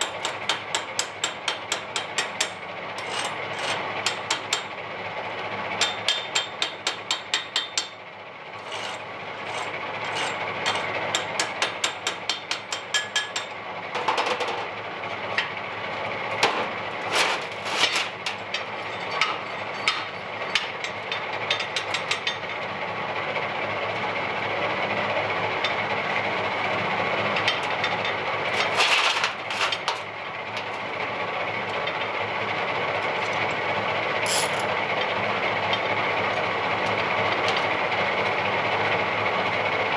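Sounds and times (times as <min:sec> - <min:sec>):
machine noise: 0:08.6 - 0:22.8, 0:25.0 - 0:39.8.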